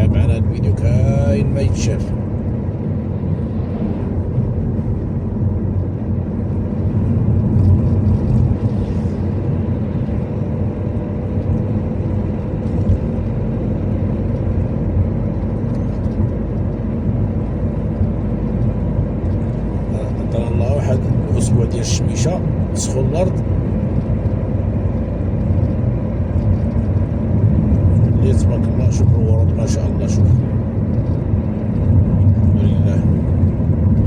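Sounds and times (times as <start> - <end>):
car driving rumble: 0.0 - 34.0.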